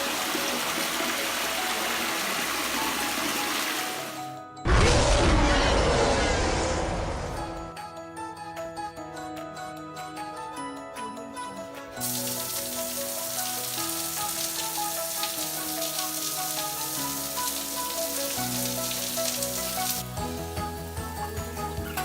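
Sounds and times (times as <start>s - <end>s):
shower spraying water: 0.0s - 4.2s, 12.0s - 20.1s
background music: 0.0s - 5.6s, 6.6s - 22.0s.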